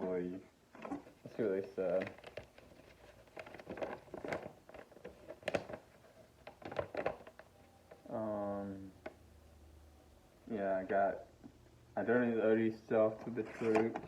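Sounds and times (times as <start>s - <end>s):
packaging and paper rustling: 0.8s - 8.1s, 13.2s - 14.0s.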